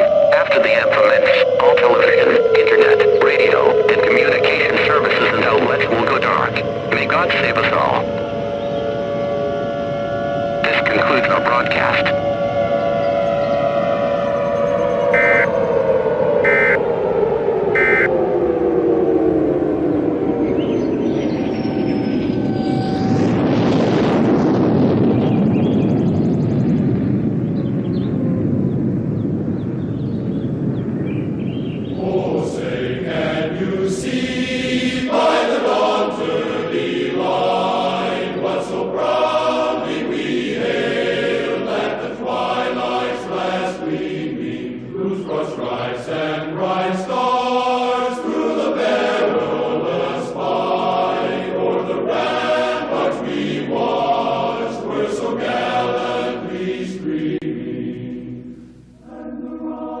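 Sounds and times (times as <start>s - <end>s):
choir singing held chords: 0.0s - 23.8s, 30.6s - 60.0s.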